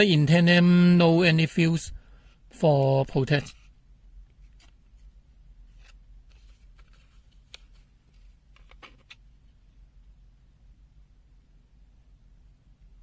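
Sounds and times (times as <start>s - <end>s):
low steady hum: 0.0s - 13.0s
light plastic clicks and scrapes: 5.7s - 9.2s.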